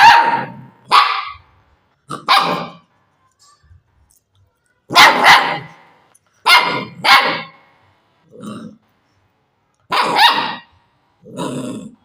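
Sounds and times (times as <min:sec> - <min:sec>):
puppy barking: 0:00.0 - 0:01.5, 0:02.2 - 0:02.9, 0:04.9 - 0:07.7, 0:09.9 - 0:10.7.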